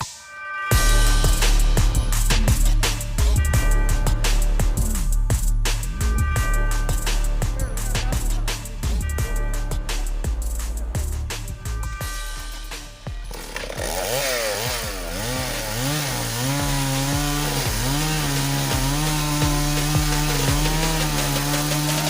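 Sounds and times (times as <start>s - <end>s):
chainsaw cutting wood: 13.1s - 22.0s.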